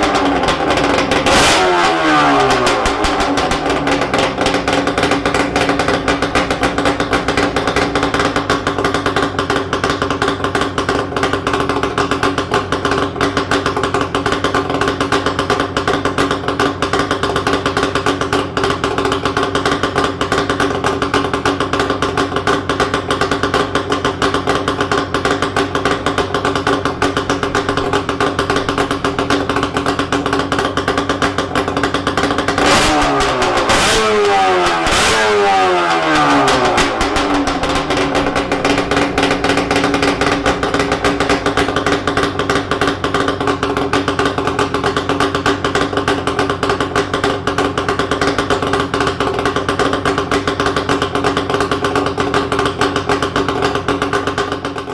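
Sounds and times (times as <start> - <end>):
engine revving: 0.0 - 10.0, 32.1 - 44.3
motorcycle engine idling loudly: 0.0 - 54.9.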